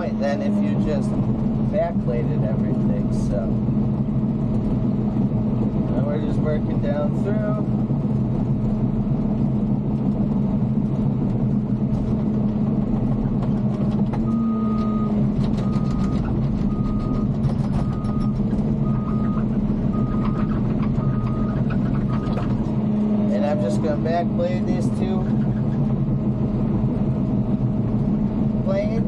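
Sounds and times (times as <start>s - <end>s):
bulldozer diesel engine running: 0.0s - 29.0s
backup alarm beeping: 14.3s - 22.4s.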